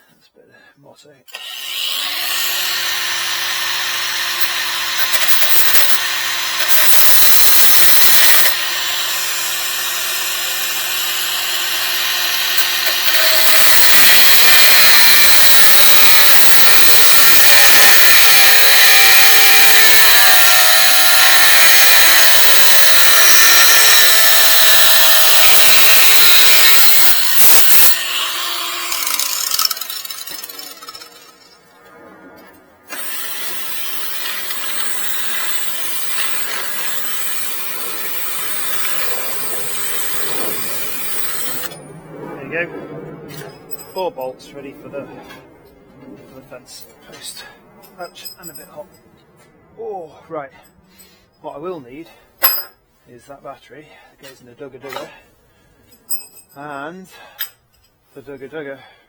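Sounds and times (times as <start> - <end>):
angle grinder cutting metal: 1.3 - 31.9, 32.9 - 41.8.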